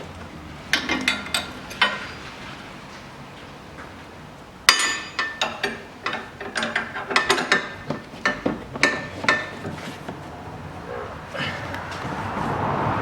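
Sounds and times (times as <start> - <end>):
metal tools knocking on metal: 0.6 - 2.4, 4.7 - 10.4.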